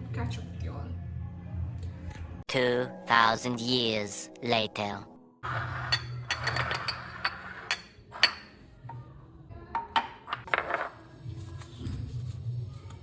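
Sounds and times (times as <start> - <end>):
dishes and utensils clattering: 5.4 - 9.0, 9.8 - 11.2.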